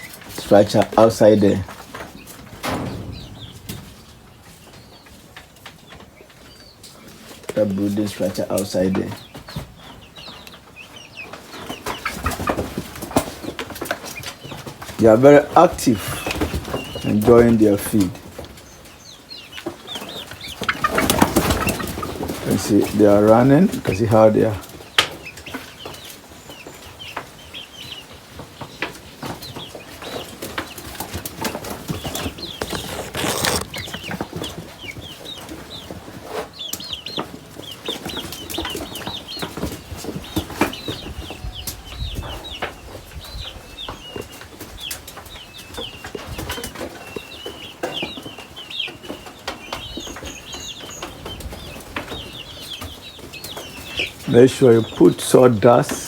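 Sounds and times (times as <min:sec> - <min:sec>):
chickens peeping: 0:00.0 - 0:56.0
loud rustling: 0:31.8 - 0:34.1.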